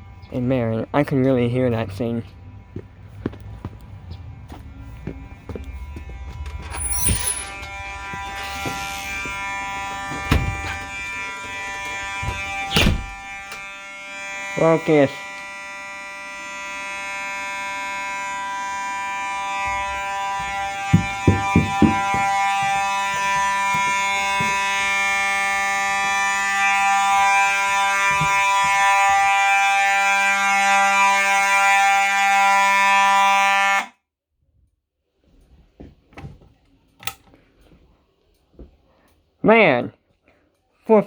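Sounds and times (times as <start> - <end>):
fire alarm horn buzzing tone: 0.0 - 34.1
knocks: 20.4 - 24.6.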